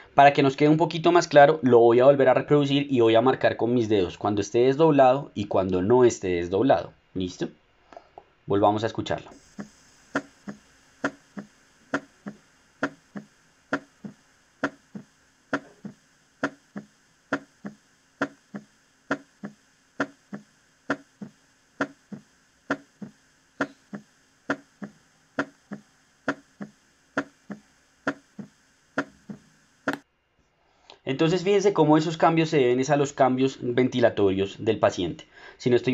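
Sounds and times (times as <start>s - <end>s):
heartbeat lub-dub: 9.3s - 30.0s.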